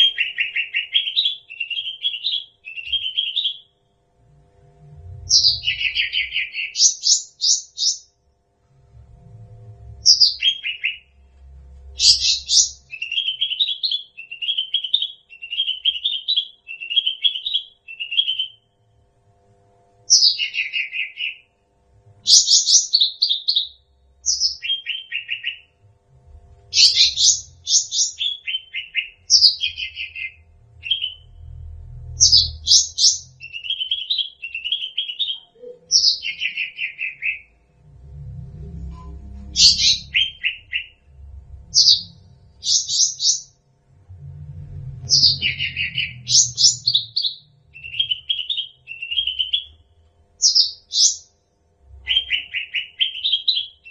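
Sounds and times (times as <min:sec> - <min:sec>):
bird whistling and chirping: 0:00.0 - 0:03.7, 0:05.3 - 0:08.0, 0:10.0 - 0:11.1, 0:12.0 - 0:18.7, 0:20.1 - 0:21.4, 0:22.2 - 0:25.7, 0:26.7 - 0:31.5, 0:32.2 - 0:37.5, 0:38.9 - 0:41.0, 0:41.7 - 0:43.5, 0:45.1 - 0:49.8, 0:50.4 - 0:51.2, 0:52.0 - 0:53.9.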